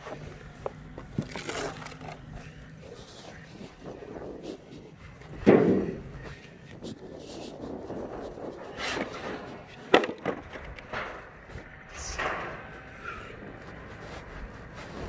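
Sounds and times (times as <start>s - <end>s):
wood boards knocking and scraping: 5.3s - 6.2s, 8.8s - 13.2s.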